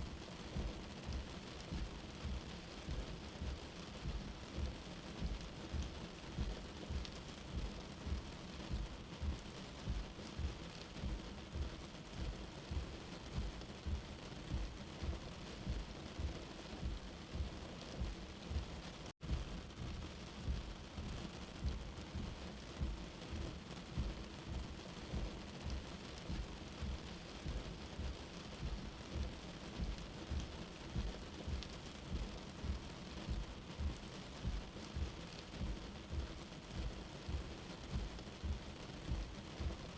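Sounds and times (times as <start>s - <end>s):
rain hissing: 0.0s - 39.9s.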